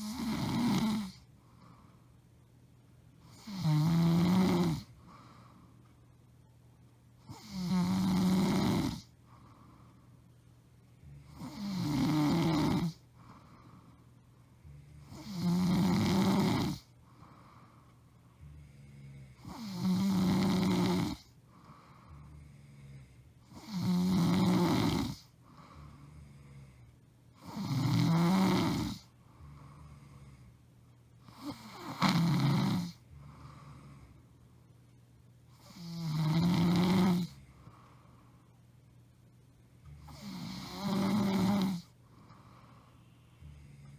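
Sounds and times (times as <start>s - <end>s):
woman snoring loudly: 0.0s - 1.2s, 3.2s - 4.9s, 7.3s - 9.1s, 11.1s - 13.0s, 14.7s - 16.9s, 18.4s - 21.3s, 22.1s - 26.7s, 27.4s - 29.1s, 31.3s - 34.0s, 35.6s - 37.4s, 39.9s - 41.9s
faint breathing: 1.0s - 2.5s, 4.8s - 6.2s, 9.0s - 11.4s, 12.8s - 15.4s, 16.7s - 19.7s, 21.1s - 23.6s, 25.2s - 27.5s, 29.0s - 31.4s, 32.9s - 34.9s, 37.2s - 39.0s, 41.6s - 43.9s.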